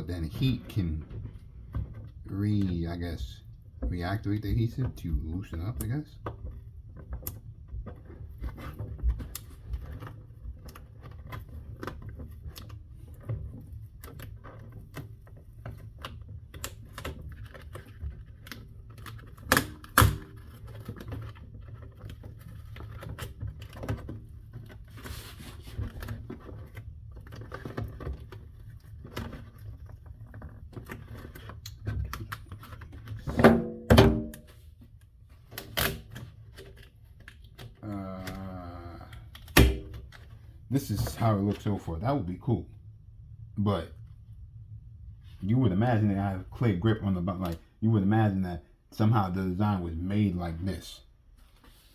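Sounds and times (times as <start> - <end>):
knocks and thunks on board: 33.2 - 34.5.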